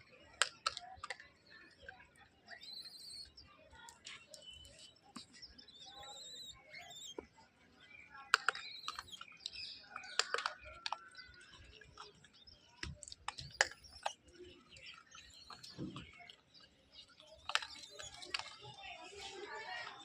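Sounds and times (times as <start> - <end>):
small birds chirping: 0.0 - 20.0
sharp clicks and taps: 8.3 - 11.2, 12.8 - 14.2.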